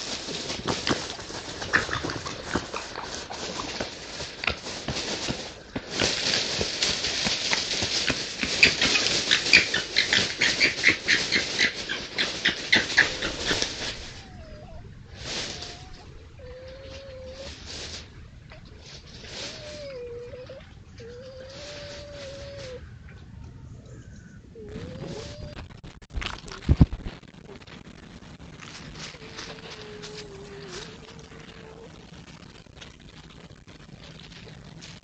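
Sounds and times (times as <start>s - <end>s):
foxes chattering calls: 1.6s - 3.7s, 8.1s - 17.6s
fox whining calls: 8.4s - 17.8s, 19.2s - 25.6s, 29.0s - 32.1s.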